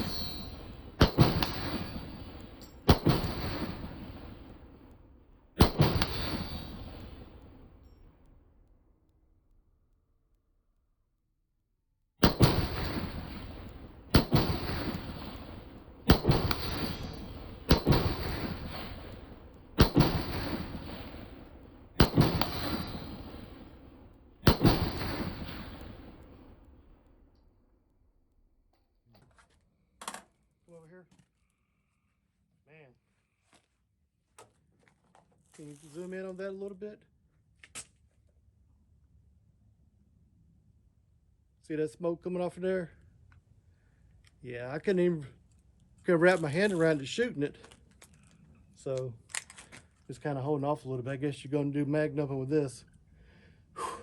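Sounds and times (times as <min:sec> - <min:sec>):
gunshots with echo: 0:00.0 - 0:08.2, 0:12.2 - 0:26.8.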